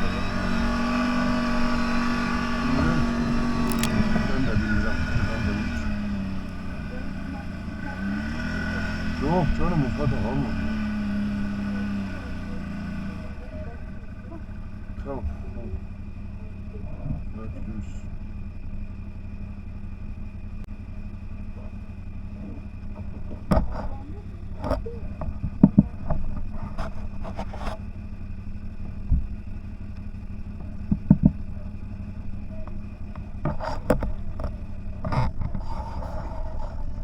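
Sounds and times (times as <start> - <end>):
off-road vehicle engine running: 0.0 - 37.0
sharp knocks and clatters: 22.8 - 27.9, 30.5 - 31.8, 32.7 - 37.0.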